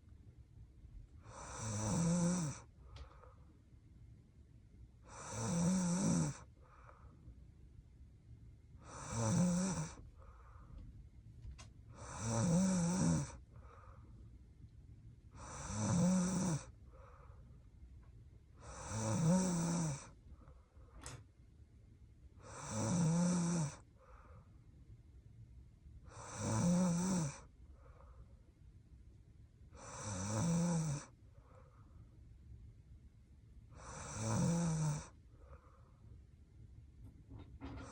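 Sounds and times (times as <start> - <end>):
woman snoring: 1.3 - 2.7, 5.1 - 6.5, 8.8 - 10.0, 12.0 - 13.4, 15.4 - 16.8, 18.6 - 20.2, 22.4 - 23.9, 26.1 - 27.5, 29.8 - 31.2, 33.8 - 35.2.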